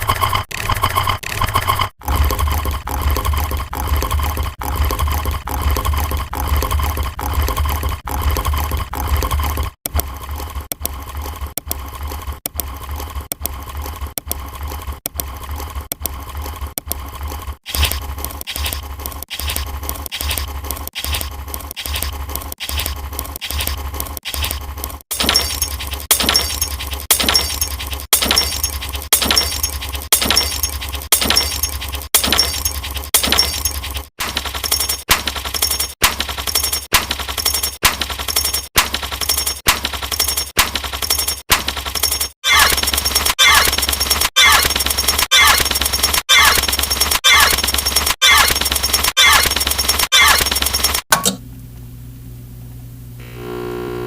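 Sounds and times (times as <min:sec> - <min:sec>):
constant low hum: 0:46.5 - 0:54.0.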